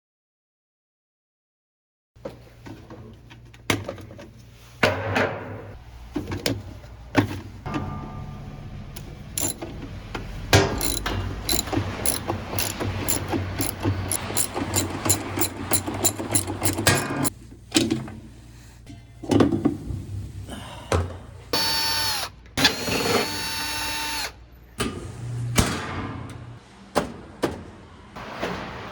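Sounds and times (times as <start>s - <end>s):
ratchet clicking: 9.4s - 9.7s, 10.7s - 17.3s
tools knocking on metal: 10.5s - 17.3s.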